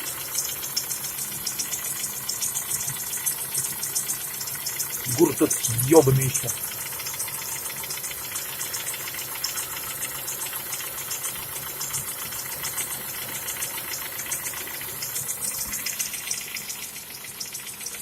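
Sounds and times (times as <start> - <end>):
car engine idling: 0.0 - 18.0.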